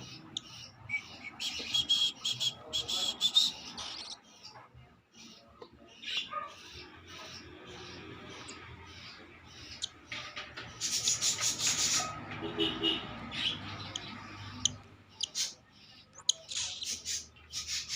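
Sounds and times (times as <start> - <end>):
bird chick raspy begging calls: 6.0 - 17.9.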